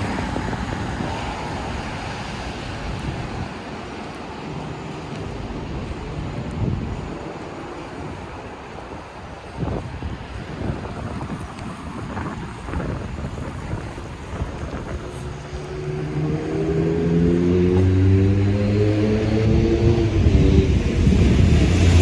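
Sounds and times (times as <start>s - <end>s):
wind on microphone: 0.0s - 4.4s, 5.2s - 22.0s
street traffic rumble: 0.0s - 22.0s
vehicle engine accelerating: 12.7s - 22.0s.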